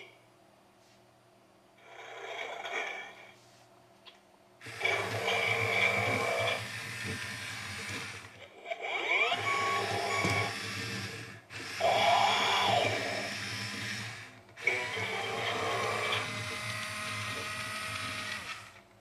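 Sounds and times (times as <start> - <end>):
toy motors whirring: 4.6 - 18.8.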